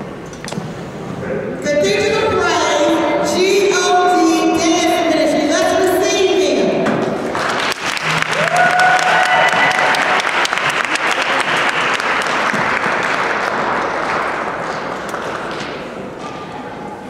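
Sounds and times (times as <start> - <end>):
congregation applauding: 7.2 - 15.9.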